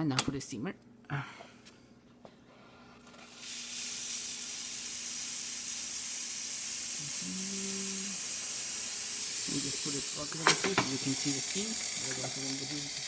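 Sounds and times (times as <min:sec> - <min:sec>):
steam wand hissing: 0:03.2 - 0:13.0.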